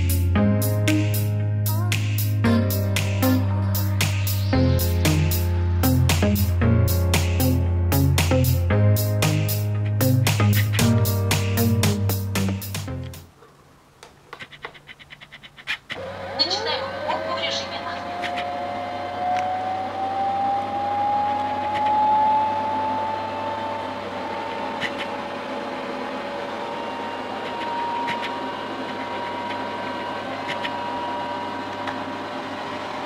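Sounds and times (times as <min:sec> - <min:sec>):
robot vacuum motor whine: 0:16.0 - 0:33.0.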